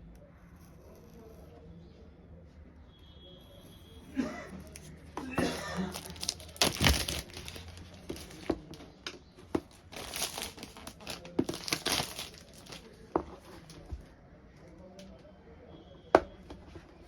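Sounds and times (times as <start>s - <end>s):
packaging crinkling and rustling: 4.8s - 14.0s.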